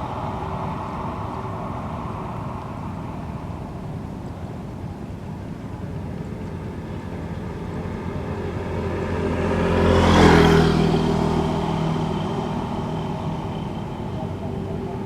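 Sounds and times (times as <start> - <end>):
vehicle passing by: 0.0 - 4.5, 6.8 - 15.0.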